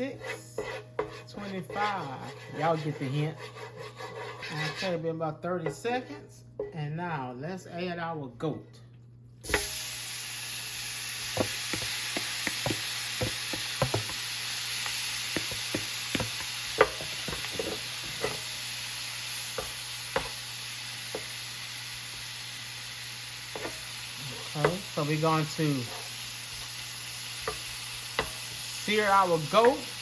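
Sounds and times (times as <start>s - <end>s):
meat sizzling in hot oil: 9.4s - 30.0s
clacks of meat stirred in skillet: 11.4s - 18.4s, 27.4s - 28.6s.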